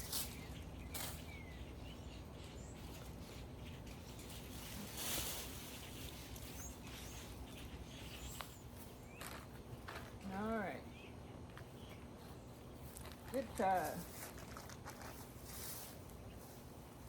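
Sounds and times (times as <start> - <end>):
short rustle: 3.0 - 6.9, 12.9 - 16.6.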